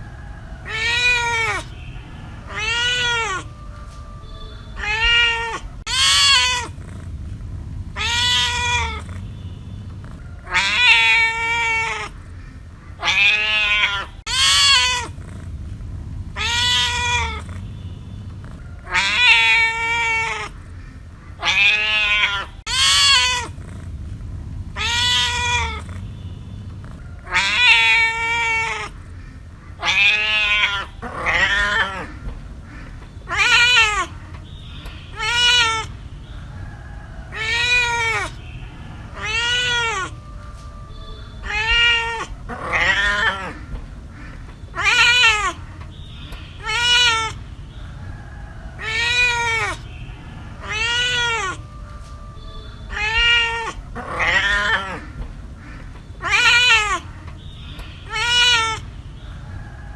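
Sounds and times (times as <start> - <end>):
faint low hum: 0.0 - 46.7
cat meowing: 0.6 - 7.1, 7.9 - 15.5, 16.3 - 23.9, 24.7 - 36.0, 37.3 - 47.4, 48.8 - 58.9.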